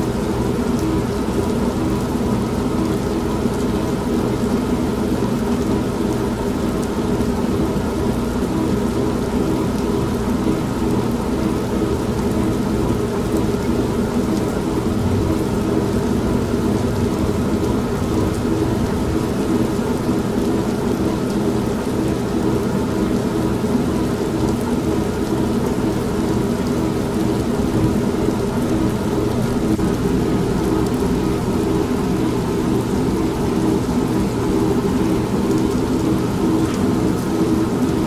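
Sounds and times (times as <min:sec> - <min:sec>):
steady rain: 0:00.0 - 0:38.0
washing machine running: 0:00.0 - 0:38.0
low rumbling thunder: 0:14.5 - 0:21.0, 0:27.7 - 0:32.6.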